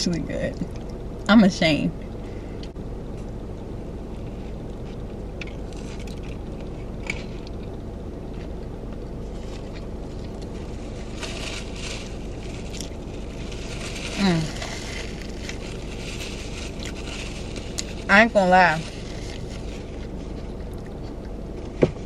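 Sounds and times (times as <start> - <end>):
low hum inside a car: 0.0 - 22.0
person chewing food: 12.2 - 18.0, 18.9 - 21.8.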